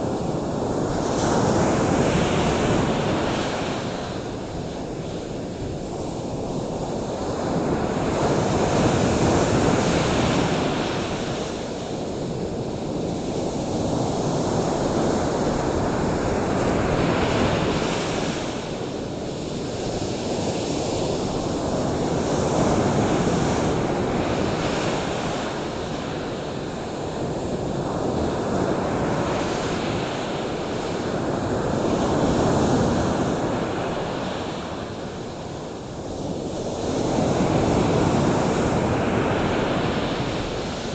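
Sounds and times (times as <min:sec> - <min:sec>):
ocean surf washing onto shore: 0:00.0 - 0:40.9.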